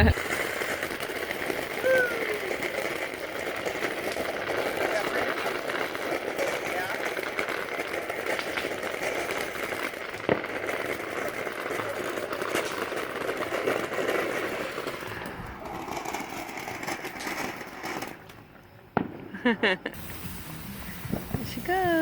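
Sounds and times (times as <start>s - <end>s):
firework fountain crackling: 0.0s - 22.0s
firework pop: 19.0s - 22.0s.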